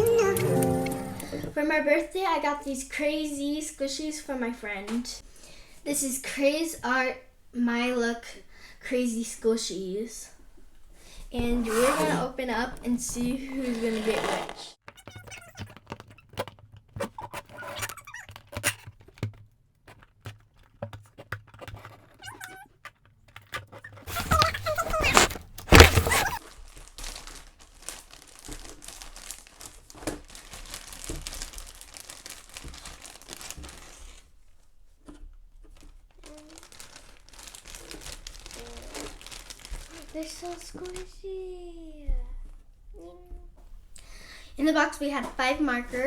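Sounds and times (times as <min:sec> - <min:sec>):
plastic and cardboard crinkling: 0:11.2 - 0:41.6.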